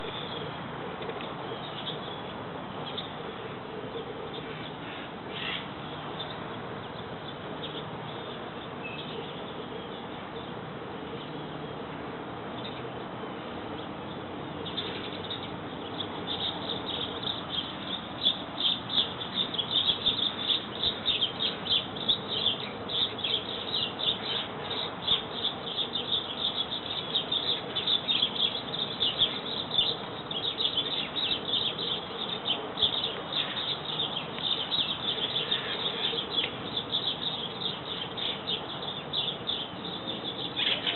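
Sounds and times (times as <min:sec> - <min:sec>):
parrots chattering: 0:35.2 - 0:36.5, 0:40.5 - 0:40.9.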